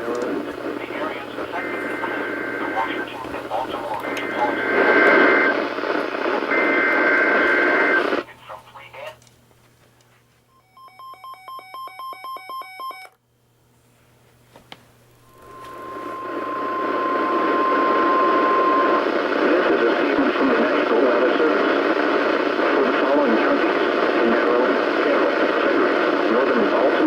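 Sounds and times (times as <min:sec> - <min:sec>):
radio static: 0:00.0 - 0:09.2, 0:15.3 - 0:27.0
steady alarm tone: 0:15.3 - 0:19.2.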